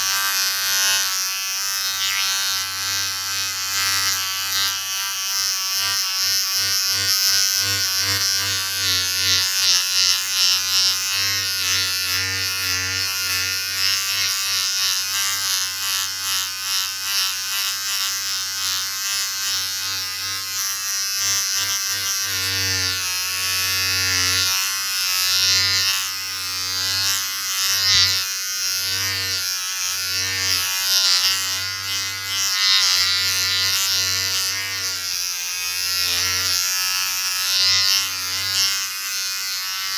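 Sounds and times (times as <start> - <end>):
electric shaver buzzing: 0.0 - 39.9.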